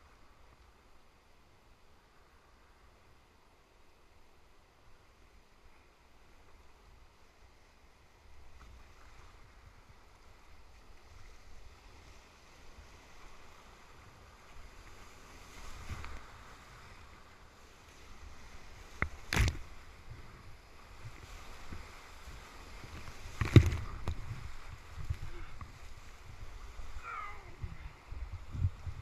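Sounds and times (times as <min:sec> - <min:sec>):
whitewater rushing: 0:18.2 - 0:28.4.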